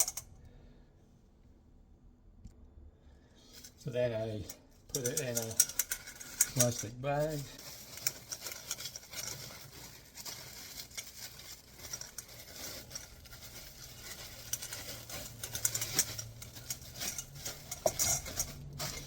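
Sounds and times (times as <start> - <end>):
plastic bag crinkling: 4.9 - 19.0.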